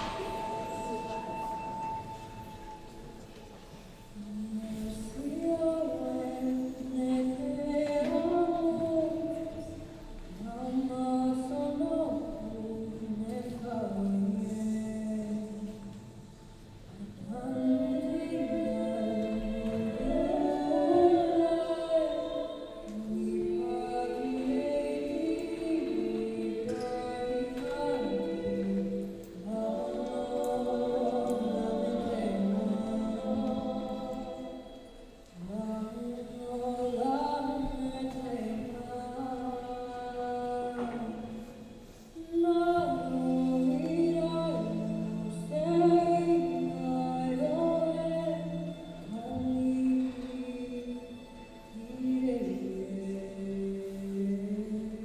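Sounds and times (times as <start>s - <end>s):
choir singing held chords: 17.2s - 55.0s.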